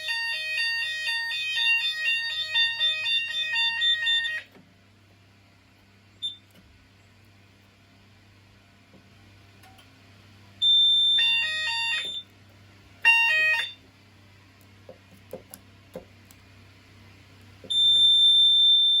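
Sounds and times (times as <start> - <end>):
steady high alarm tone: 0.0 - 4.5, 10.6 - 12.3, 13.0 - 13.8, 17.7 - 19.0.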